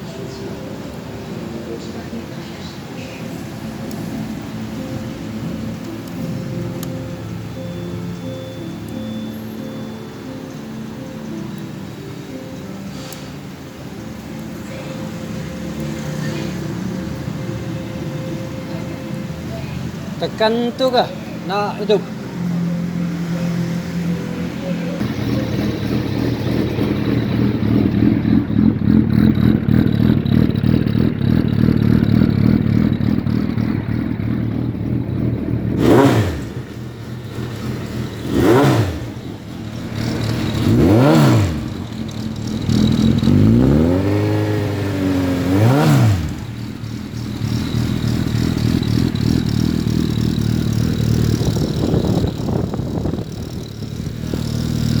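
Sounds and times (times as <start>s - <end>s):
motorcycle engine idling: 13.6s - 55.0s
motorcycle engine revving: 14.2s - 55.0s.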